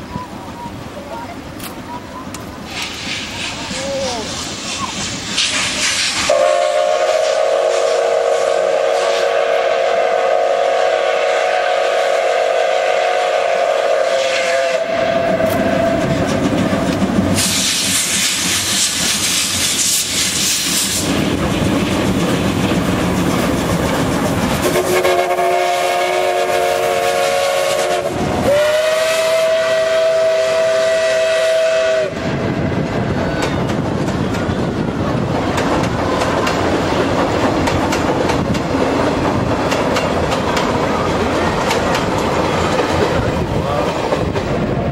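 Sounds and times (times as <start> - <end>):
train running noise: 0.0 - 44.9
loud hiss of steam: 2.5 - 34.0
steam locomotive whistle: 4.7 - 16.1, 17.4 - 21.1, 24.6 - 32.4.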